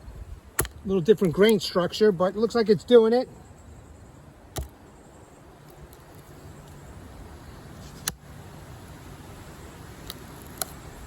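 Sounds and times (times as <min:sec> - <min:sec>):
low background hiss: 0:00.0 - 0:11.0
blade chopping into wood: 0:00.5 - 0:01.6, 0:04.5 - 0:04.8.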